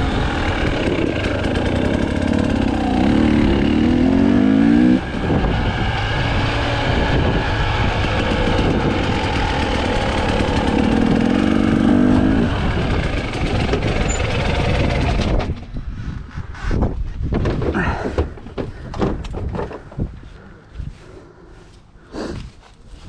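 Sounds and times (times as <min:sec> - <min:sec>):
motorcycle engine revving: 0:00.0 - 0:15.7.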